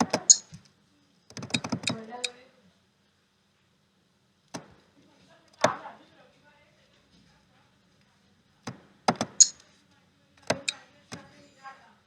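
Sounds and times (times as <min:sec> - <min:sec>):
sharp snapping clicks: 0:01.3 - 0:02.0.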